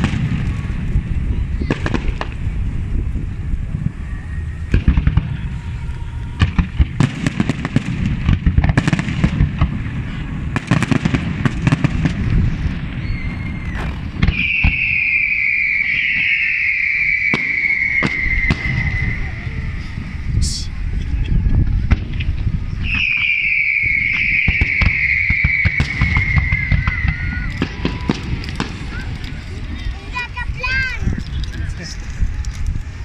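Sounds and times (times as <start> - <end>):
low rumbling echo: 0.0 - 16.0, 17.1 - 24.6
fireworks bangs and crackles: 0.0 - 33.0
high falling whistle: 12.5 - 20.0, 22.8 - 28.2.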